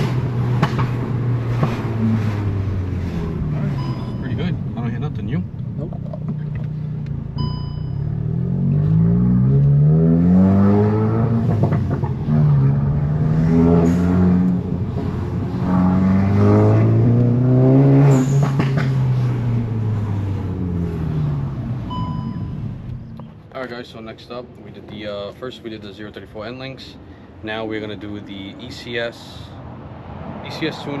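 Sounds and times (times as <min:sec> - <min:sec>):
car engine accelerating: 0:00.0 - 0:23.3.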